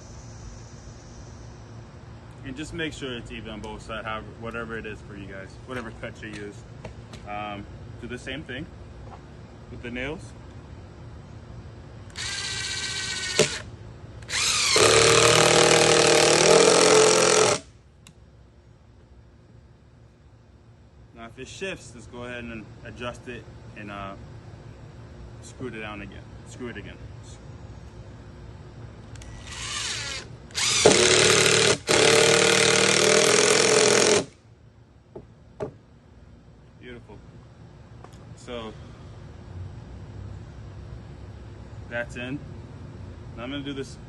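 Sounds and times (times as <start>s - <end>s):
cordless drill driving screw: 12.1s - 13.6s, 14.2s - 17.7s, 29.2s - 34.4s.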